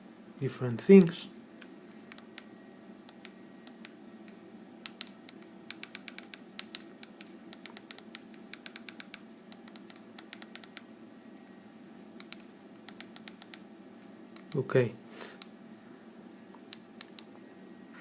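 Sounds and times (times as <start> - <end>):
phone keypad button clicks: 4.8 - 10.9.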